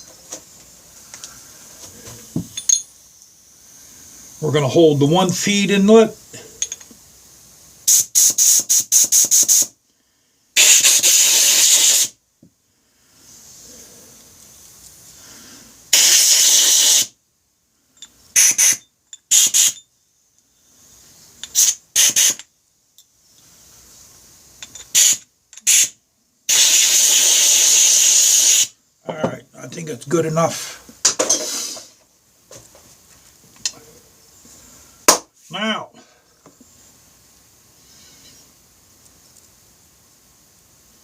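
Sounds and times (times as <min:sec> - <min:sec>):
compressed air blow gun hissing: 0:07.3 - 0:09.8, 0:10.6 - 0:12.2, 0:14.9 - 0:17.2, 0:18.3 - 0:19.8, 0:20.8 - 0:22.4, 0:23.4 - 0:28.8, 0:30.6 - 0:32.0.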